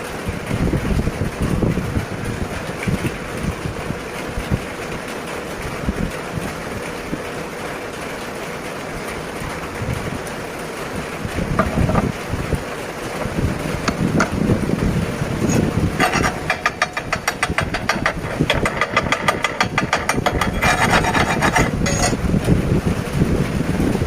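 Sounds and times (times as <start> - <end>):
welding arc crackling: 12.2 - 22.5.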